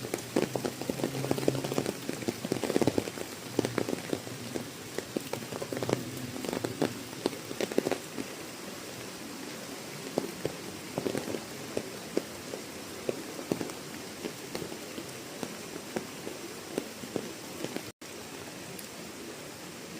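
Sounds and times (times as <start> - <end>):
rain hissing: 0.0 - 19.9
raindrops striking a surface: 0.0 - 19.9.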